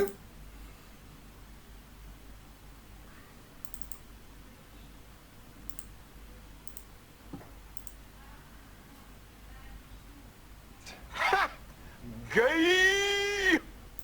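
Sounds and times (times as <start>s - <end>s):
low steady hum: 0.0s - 14.0s
computer mouse clicks: 3.6s - 4.0s, 5.7s - 5.9s, 6.6s - 6.9s, 7.8s - 8.0s.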